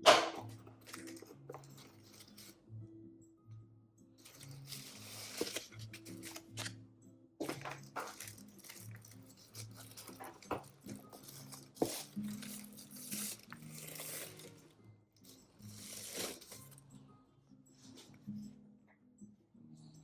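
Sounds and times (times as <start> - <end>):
soft background music: 0.0 - 20.0
packaging rustling: 0.8 - 2.5, 4.2 - 6.7, 7.4 - 14.6, 15.6 - 16.8.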